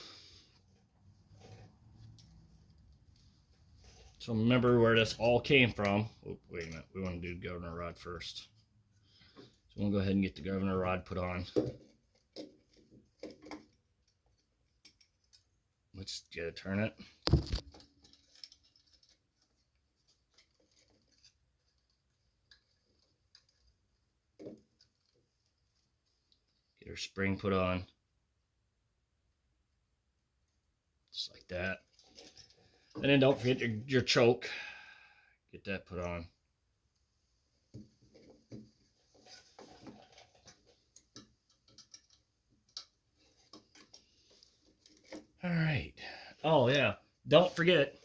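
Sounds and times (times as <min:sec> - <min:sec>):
small parts clicking and tapping: 0:05.0 - 0:07.3, 0:11.1 - 0:15.6, 0:17.2 - 0:26.8, 0:36.9 - 0:45.4
small parts clicking: 0:40.2 - 0:45.4.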